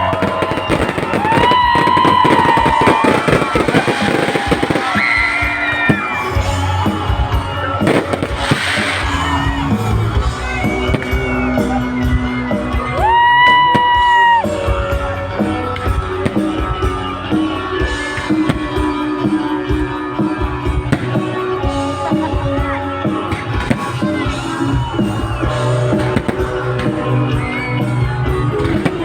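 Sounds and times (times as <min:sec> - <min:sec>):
fireworks banging: 0:00.0 - 0:11.3, 0:23.2 - 0:27.2, 0:28.6 - 0:29.0
crowd noise: 0:00.0 - 0:29.0
loud amplified music: 0:00.0 - 0:29.0.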